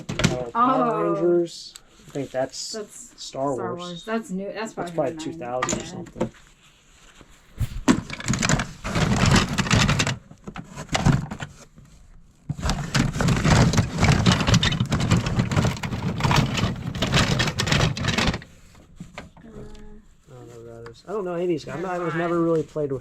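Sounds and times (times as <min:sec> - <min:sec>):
plastic toys clattering and rustling: 0:00.0 - 0:00.6, 0:05.2 - 0:06.4, 0:07.7 - 0:19.8.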